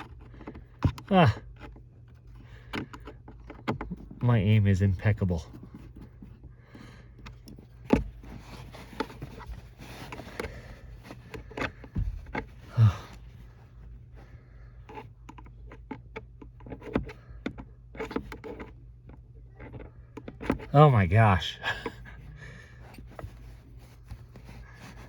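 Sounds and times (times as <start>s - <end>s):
plastic parts clicking and scraping: 0.0s - 25.0s.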